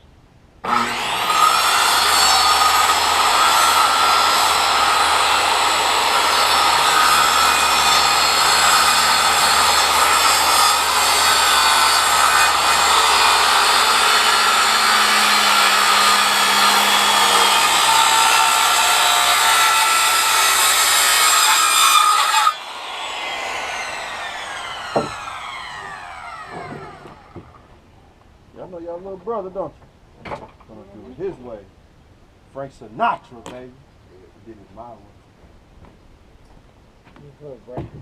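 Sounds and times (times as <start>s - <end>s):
electric power saw cutting: 0.6s - 27.7s
saw blade spinning down whine: 0.7s - 27.6s.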